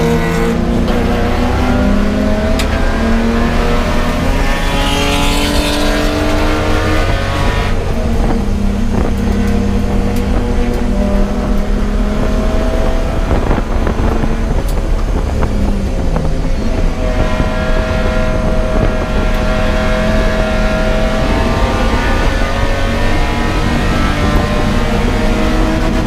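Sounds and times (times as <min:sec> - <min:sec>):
race car engine running hard: 0:00.0 - 0:26.0.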